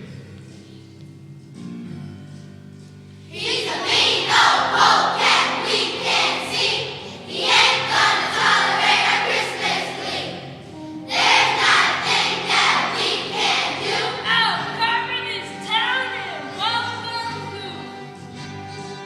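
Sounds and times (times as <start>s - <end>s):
instrumental accompaniment: 0.0s - 19.0s
children's choir singing: 3.3s - 14.8s.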